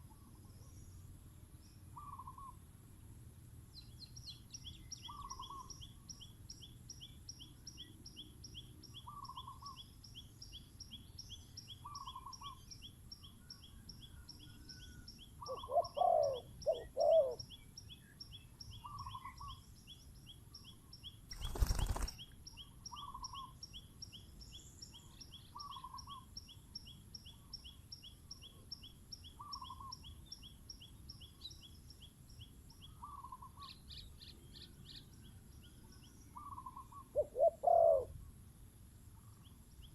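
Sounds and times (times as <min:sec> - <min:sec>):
doves cooing: 0:15.4 - 0:17.4, 0:36.4 - 0:38.2.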